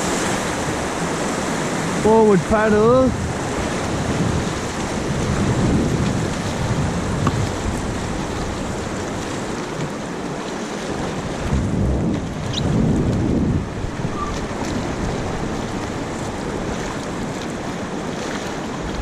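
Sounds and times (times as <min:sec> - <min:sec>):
whitewater roaring: 0:00.0 - 0:19.0
wind buffeting microphone: 0:00.0 - 0:19.0.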